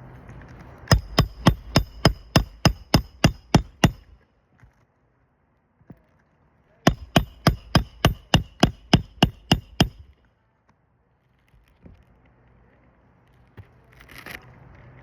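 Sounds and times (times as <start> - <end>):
hammer nailing roof shingles: 0.9 - 4.1, 6.9 - 10.1.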